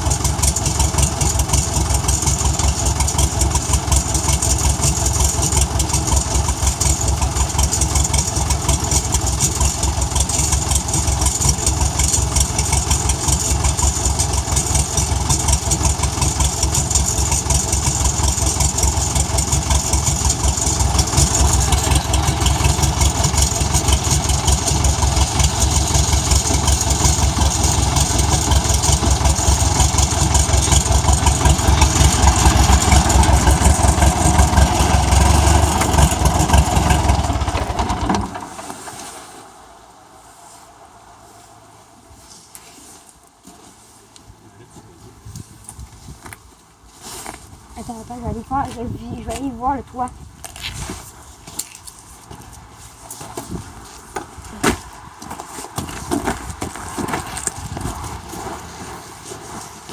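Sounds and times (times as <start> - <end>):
bulldozer diesel engine idling: 0.0 - 38.7.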